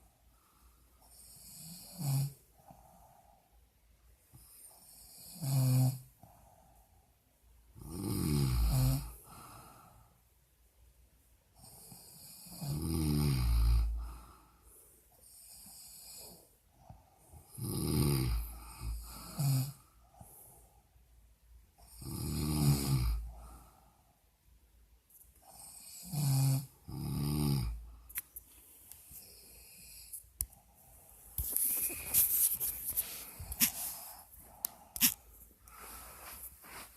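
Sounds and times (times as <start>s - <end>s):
woman snoring loudly: 1.4s - 2.4s, 4.9s - 6.0s, 7.8s - 9.2s, 11.8s - 14.0s, 17.5s - 19.8s, 22.0s - 23.2s, 25.5s - 27.8s
short sharp snorts: 31.6s - 36.9s.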